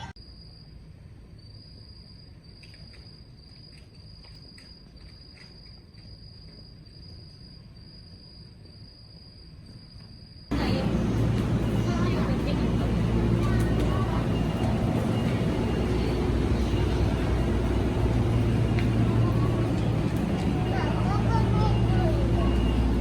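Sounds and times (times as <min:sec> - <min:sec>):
cricket trilling: 0:01.4 - 0:12.2.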